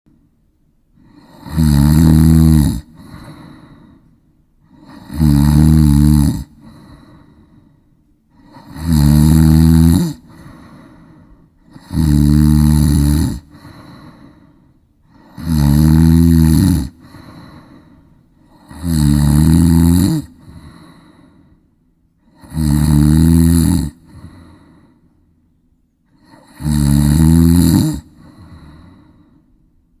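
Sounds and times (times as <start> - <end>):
loud rasping snoring: 1.0 - 3.9, 4.6 - 7.4, 8.3 - 14.4, 15.1 - 21.3, 22.2 - 24.7, 26.1 - 29.2
faint breath: 2.9 - 5.0, 6.5 - 8.8, 10.2 - 11.9, 13.4 - 15.4, 16.9 - 18.8, 20.3 - 22.5, 24.0 - 25.4, 28.0 - 29.8.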